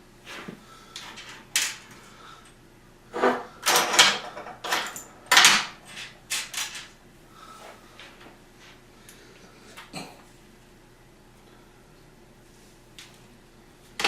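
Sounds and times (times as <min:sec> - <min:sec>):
metal hardware clanking and rattling: 0:03.2 - 0:06.9.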